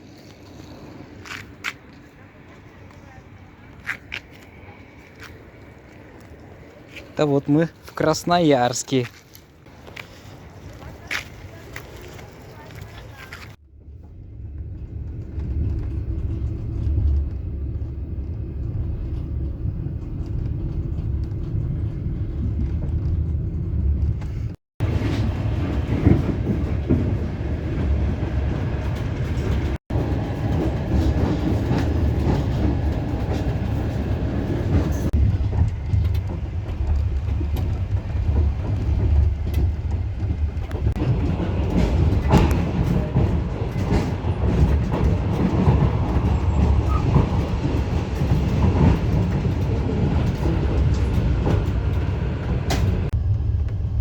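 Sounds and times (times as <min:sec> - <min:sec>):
train rumbling: 0:00.0 - 0:54.0
wheels clattering over rails: 0:10.8 - 0:53.7.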